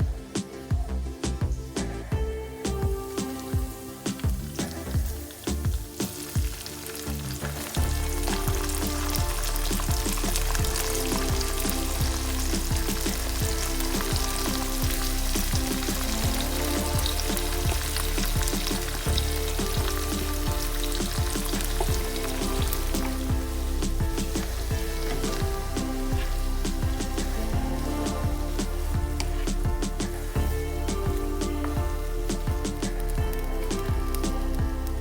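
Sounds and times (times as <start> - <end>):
food frying in hot oil: 3.3 - 29.4.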